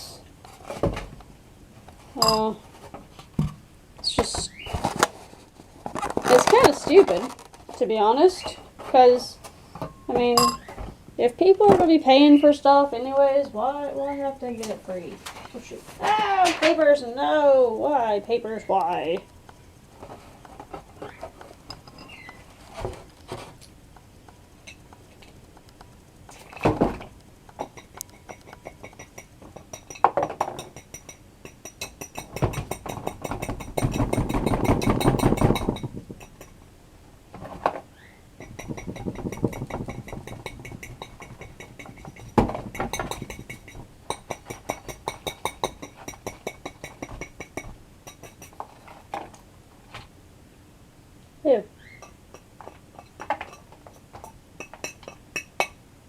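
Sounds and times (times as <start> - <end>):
rustling handling noise: 0.3 - 23.9
small clicks clinks and knocks: 27.5 - 36.6, 38.4 - 48.7.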